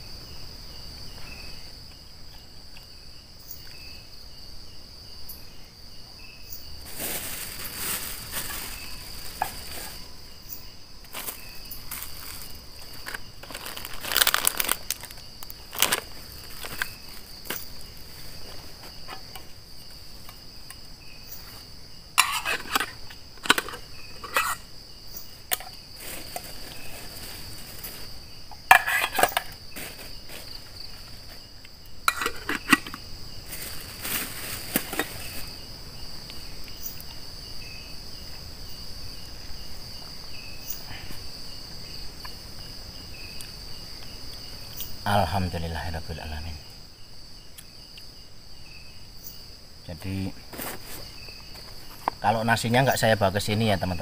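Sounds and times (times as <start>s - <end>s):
insects chirring: 0.0s - 54.0s
close crackling and rustling: 6.7s - 24.7s, 25.3s - 37.1s, 50.0s - 54.0s.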